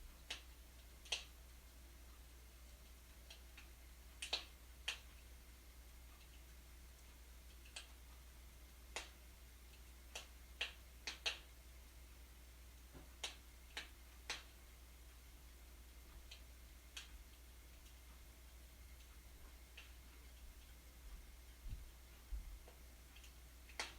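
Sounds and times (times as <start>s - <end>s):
low steady hum: 0.0s - 23.9s
wood fire crackling and popping: 0.2s - 1.6s, 2.7s - 5.3s, 8.9s - 11.6s, 12.9s - 14.6s, 22.6s - 23.9s.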